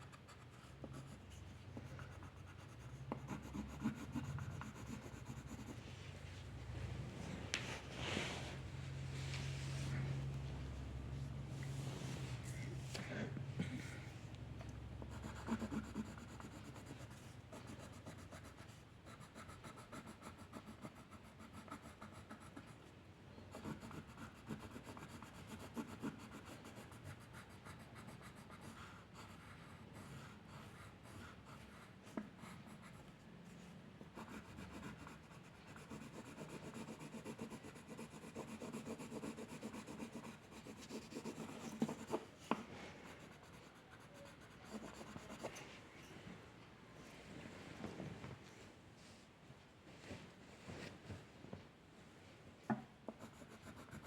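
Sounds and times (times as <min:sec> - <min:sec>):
drawing tool scratching paper: 0:00.0 - 0:05.8, 0:15.1 - 0:22.7, 0:23.5 - 0:31.7, 0:34.1 - 0:45.6, 0:53.1 - 0:54.0.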